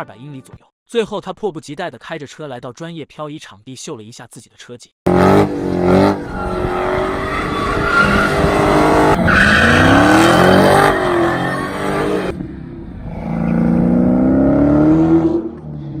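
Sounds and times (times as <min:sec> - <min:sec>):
car engine revving hard: 0:05.1 - 0:15.8
tyres squealing: 0:06.2 - 0:12.3.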